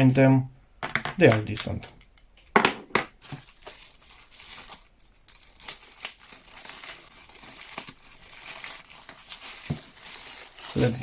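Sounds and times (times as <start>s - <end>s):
packaging crinkling and rustling: 3.1s - 11.0s.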